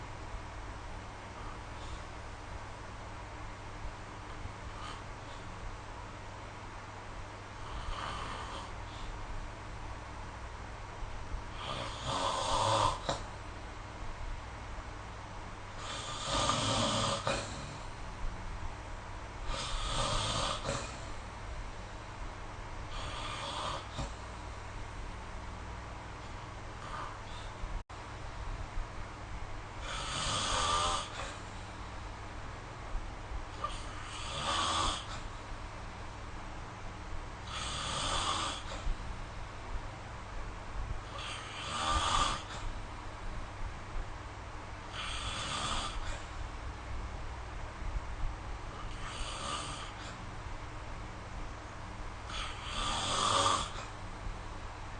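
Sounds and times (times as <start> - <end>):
steady low hum: 0.0 - 54.9
person snoring: 7.6 - 9.1, 11.5 - 13.3, 15.8 - 17.9, 19.4 - 21.2, 22.9 - 24.2, 26.8 - 27.5, 29.8 - 31.5, 33.6 - 35.3, 37.4 - 38.9, 41.0 - 42.7, 44.9 - 46.3, 48.7 - 50.2, 52.3 - 53.9.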